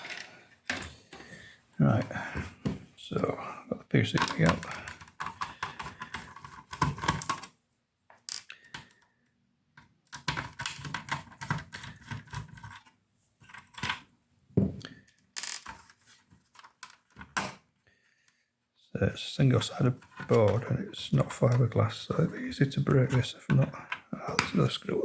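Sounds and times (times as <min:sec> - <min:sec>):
plastic case clicking and clattering: 0:04.1 - 0:07.5, 0:10.1 - 0:12.9, 0:23.0 - 0:25.0.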